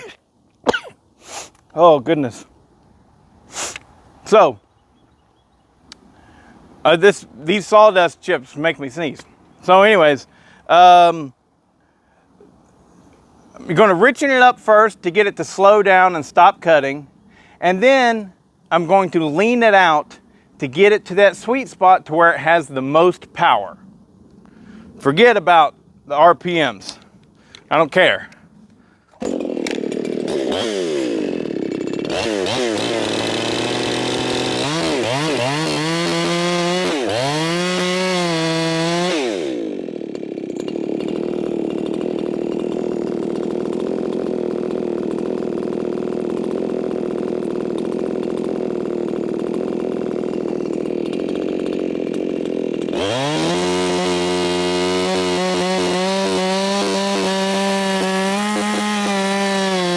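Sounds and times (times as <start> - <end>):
chainsaw revving: 29.1 - 59.9.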